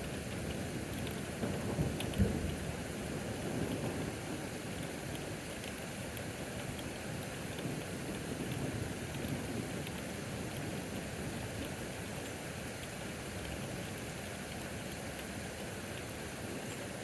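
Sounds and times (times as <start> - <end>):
heavy rain falling: 0.0 - 17.0
raindrops ticking: 0.0 - 17.0.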